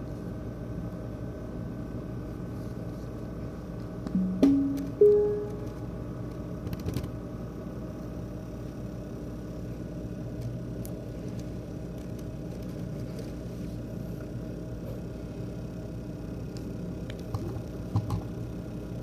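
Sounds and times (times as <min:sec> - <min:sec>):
laptop fan rattling and buzzing: 0:06.6 - 0:19.0.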